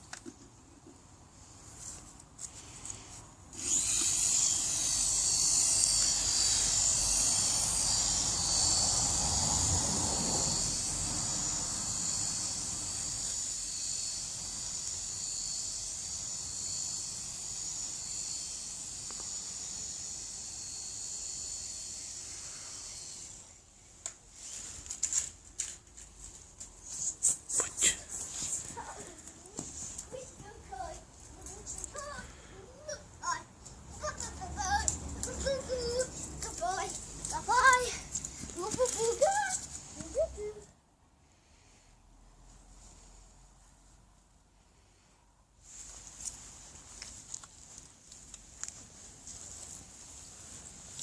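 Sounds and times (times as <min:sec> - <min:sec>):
toy helicopter motor whining: 0:02.8 - 0:23.6, 0:27.0 - 0:33.4, 0:34.0 - 0:40.5.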